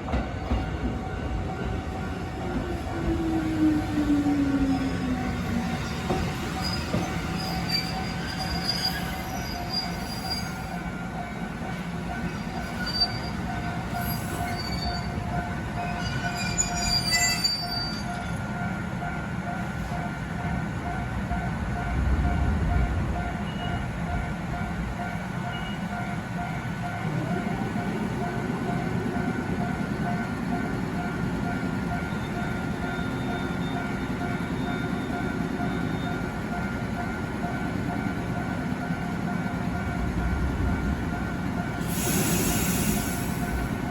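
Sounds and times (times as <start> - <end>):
train running sound rising: 0.0 - 43.9
train wheel squeals: 3.0 - 11.3, 12.1 - 18.8, 25.4 - 26.0, 31.4 - 36.4, 41.6 - 43.8.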